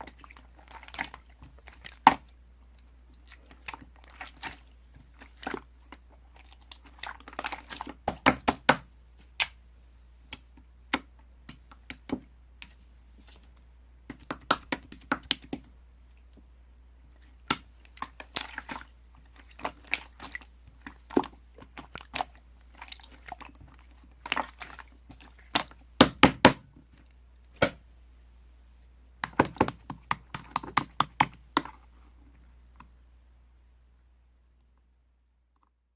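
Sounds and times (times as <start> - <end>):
slime clicking and popping: 29.2 - 31.7.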